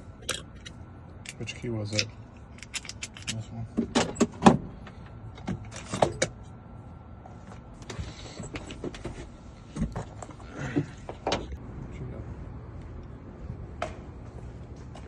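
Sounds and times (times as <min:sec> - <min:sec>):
metallic clicks and rattles of keys: 0:00.2 - 0:04.3.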